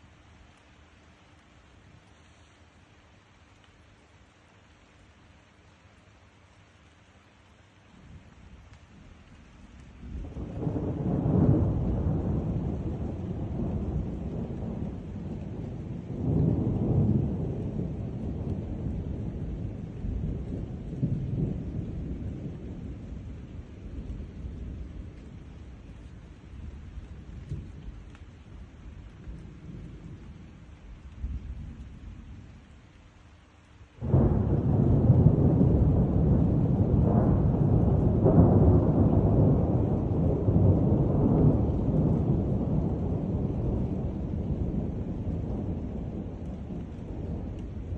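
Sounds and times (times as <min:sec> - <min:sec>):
thunder rumbling: 0:09.6 - 0:32.6, 0:34.0 - 0:47.9
loud thunder clap: 0:34.0 - 0:47.9.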